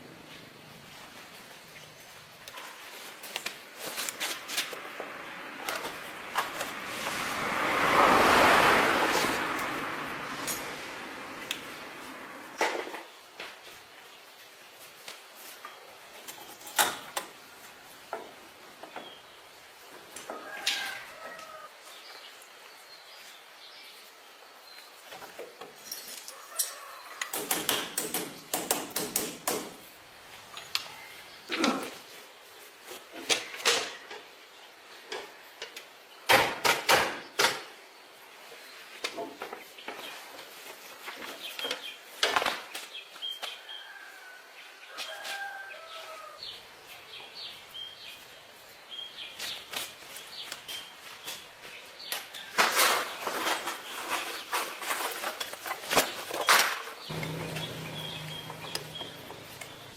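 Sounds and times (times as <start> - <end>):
sharp knocks and clicks: 27.2 - 29.8.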